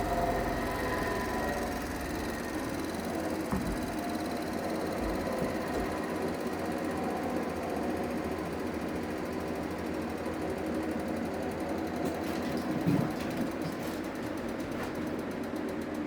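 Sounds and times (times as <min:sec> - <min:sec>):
bandsaw running: 0:00.0 - 0:09.4.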